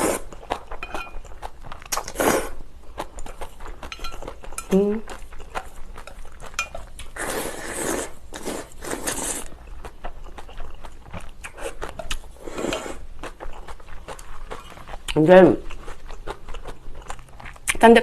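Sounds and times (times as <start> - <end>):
chewing: 0.0 - 2.3, 2.9 - 18.0
noodle slurping: 7.1 - 9.6, 11.5 - 13.0.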